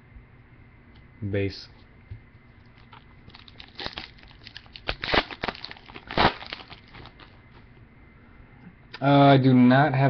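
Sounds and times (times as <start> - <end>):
card wrapper crinkling: 2.7 - 7.4.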